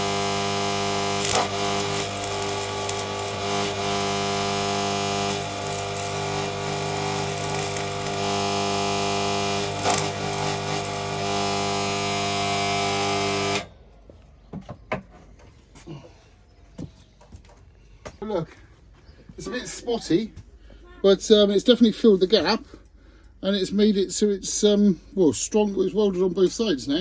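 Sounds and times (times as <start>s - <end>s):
welding arc hiss and crackle: 0.0s - 13.7s.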